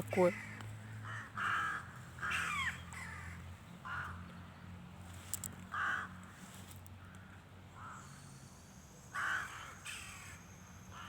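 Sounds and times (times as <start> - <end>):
crow cawing: 0.2 - 4.2, 5.7 - 6.2, 9.2 - 11.0.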